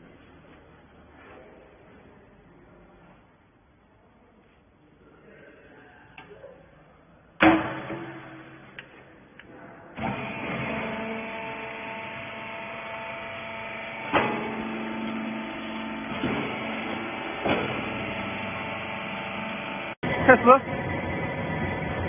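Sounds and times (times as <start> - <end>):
baler machine humming: 9.9 - 22.0.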